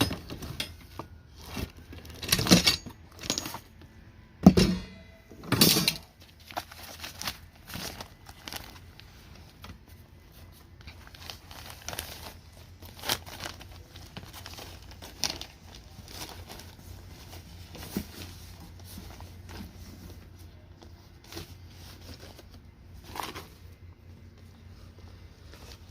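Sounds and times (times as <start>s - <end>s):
packaging crinkling and tearing: 6.2s - 18.8s.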